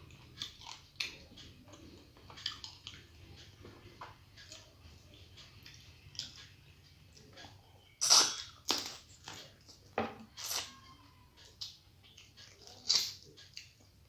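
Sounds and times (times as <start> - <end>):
person chewing: 0.0 - 3.5, 8.0 - 10.8, 11.4 - 13.9.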